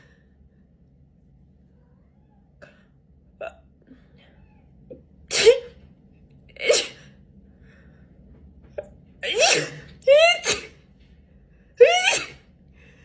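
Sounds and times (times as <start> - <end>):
woman sneezing: 6.6 - 7.0, 9.2 - 10.8, 11.8 - 12.4.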